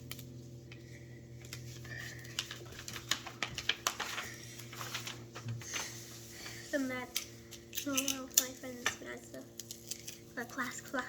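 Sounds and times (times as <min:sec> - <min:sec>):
steady low hum: 0:00.0 - 0:11.0
paper and tape handling clicks: 0:01.4 - 0:05.9, 0:07.1 - 0:11.0.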